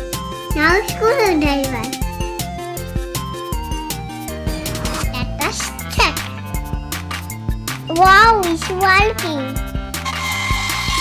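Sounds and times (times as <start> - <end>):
steady drum beat: 1.9 - 8.8, 9.6 - 11.0.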